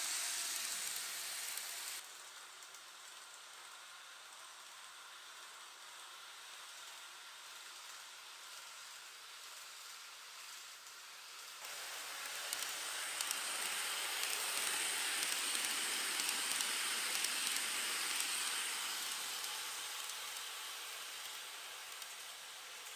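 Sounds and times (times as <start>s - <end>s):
model train wheels hissing on rails: 0.0s - 22.9s
faint high motor whine: 7.7s - 22.9s
small clicks: 11.6s - 20.5s.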